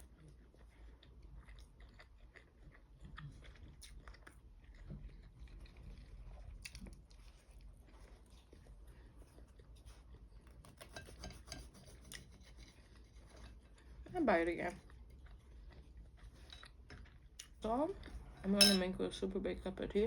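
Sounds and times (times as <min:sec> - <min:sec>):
person chewing: 0:00.0 - 0:14.0, 0:14.8 - 0:18.4.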